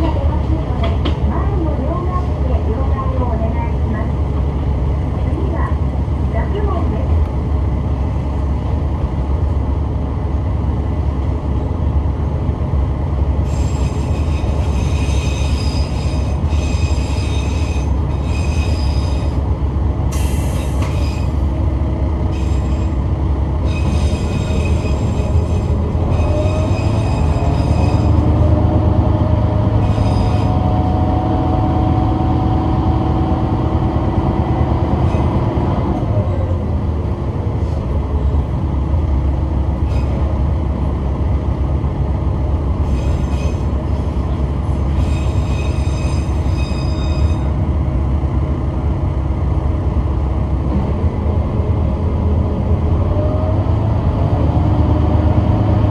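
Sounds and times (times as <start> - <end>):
railcar engine and wheels rumbling: 0.0 - 55.9
high-pitched wheel squeal: 13.5 - 19.4, 20.2 - 21.4, 23.6 - 28.6, 29.8 - 30.9, 42.8 - 47.6.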